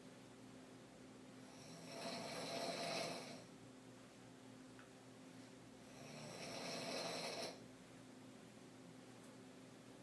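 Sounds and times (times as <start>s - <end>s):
woman snoring: 1.5s - 3.5s, 5.9s - 7.6s.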